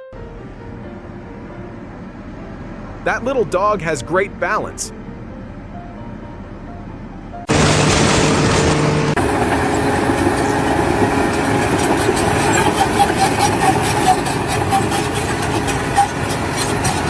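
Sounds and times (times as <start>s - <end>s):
machine running with fast clatter: 7.5s - 17.0s.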